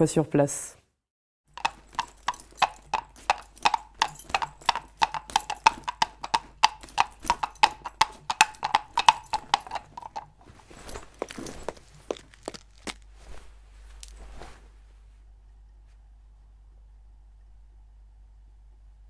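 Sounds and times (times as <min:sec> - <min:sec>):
coconut shell hoofbeats clip-clop: 0:01.5 - 0:13.1
soft rustle: 0:09.7 - 0:16.1.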